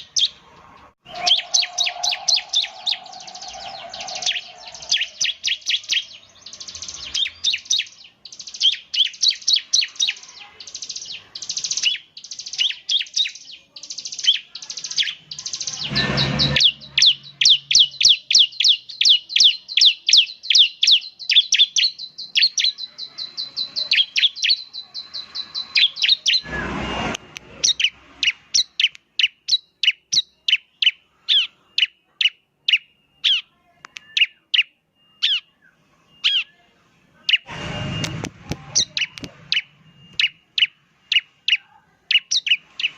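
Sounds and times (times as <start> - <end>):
bird singing in rapid high chirps: 0.0 - 26.8, 27.6 - 42.9
steady high whistle: 1.1 - 5.4, 26.3 - 27.4.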